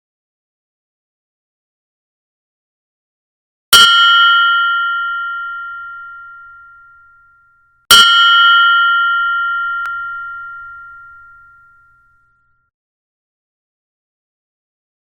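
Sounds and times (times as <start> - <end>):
meditation bell ringing: 3.7 - 12.7.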